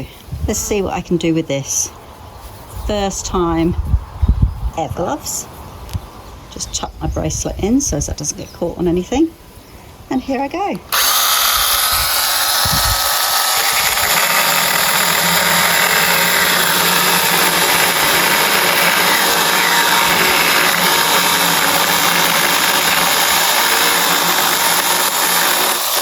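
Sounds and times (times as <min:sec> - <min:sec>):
small chainsaw cutting wood: 0:10.9 - 0:26.0.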